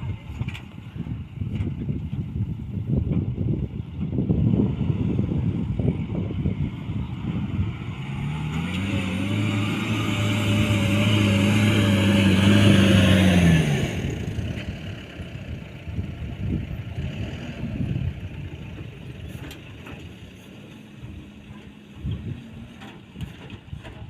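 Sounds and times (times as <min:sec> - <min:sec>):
diesel engine revving hard: 0:04.4 - 0:18.6.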